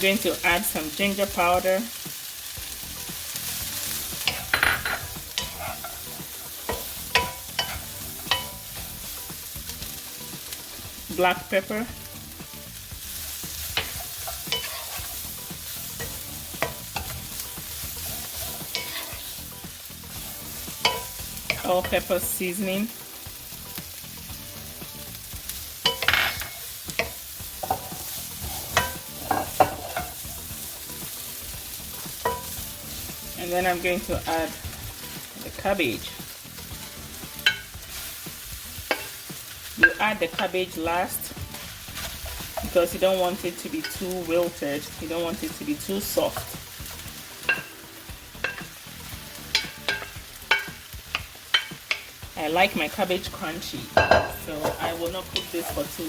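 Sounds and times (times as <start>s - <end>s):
vegetables sizzling in a frying pan: 0.0s - 56.0s
utensil knocking against pan: 53.9s - 55.8s.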